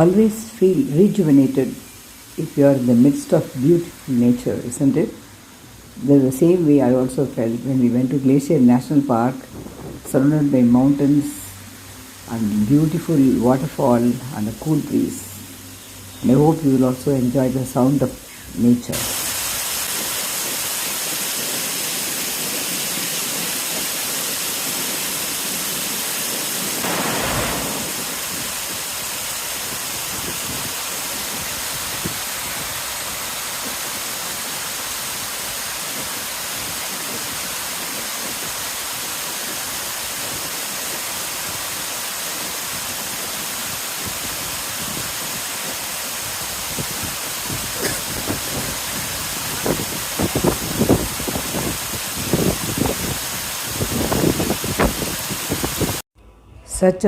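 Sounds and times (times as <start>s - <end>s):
waterfall rushing: 0.0s - 5.7s, 18.9s - 56.0s.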